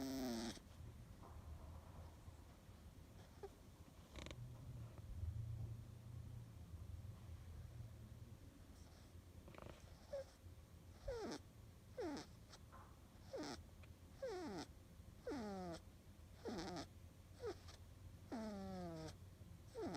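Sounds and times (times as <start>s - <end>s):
cat snoring: 0.0s - 0.6s, 4.1s - 4.4s, 8.8s - 10.4s, 11.0s - 11.4s, 12.0s - 12.6s, 13.2s - 13.6s, 14.2s - 15.8s, 16.4s - 19.9s.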